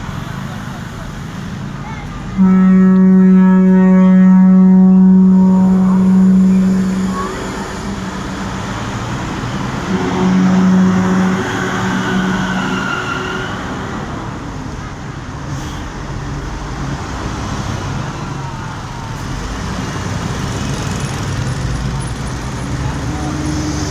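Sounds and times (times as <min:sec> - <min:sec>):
passing bus and road traffic: 0:00.0 - 0:23.9
multi-tone bus horn: 0:02.1 - 0:16.0, 0:22.9 - 0:23.9.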